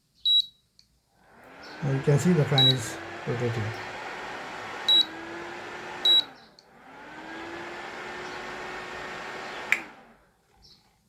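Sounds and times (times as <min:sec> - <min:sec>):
cooling fan whirring: 0:01.2 - 0:10.3.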